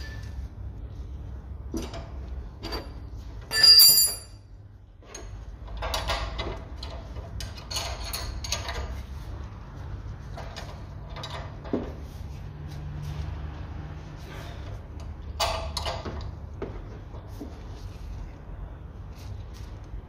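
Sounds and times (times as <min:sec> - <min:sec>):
ringing metal clink: 0:03.5 - 0:04.5.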